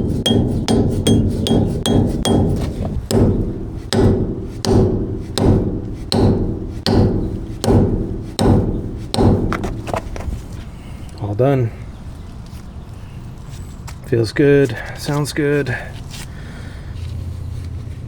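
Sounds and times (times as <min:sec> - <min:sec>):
hammer striking metal: 0:00.0 - 0:10.8.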